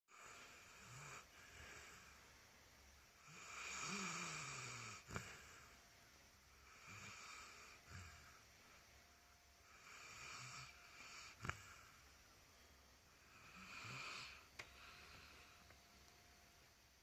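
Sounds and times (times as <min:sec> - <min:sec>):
person snoring: 0:00.1 - 0:02.2, 0:03.2 - 0:05.8, 0:06.6 - 0:08.4, 0:09.6 - 0:12.0, 0:13.2 - 0:15.5.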